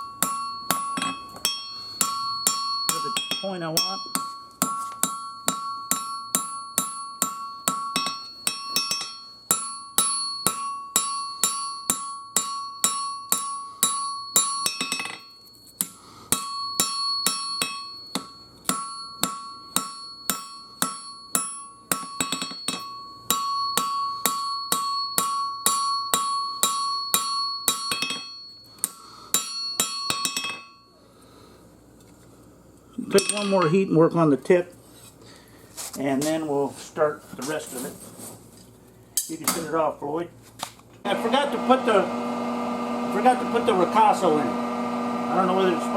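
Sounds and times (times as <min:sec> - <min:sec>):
hammer striking steel anvil: 0:00.0 - 0:30.8, 0:33.1 - 0:33.8.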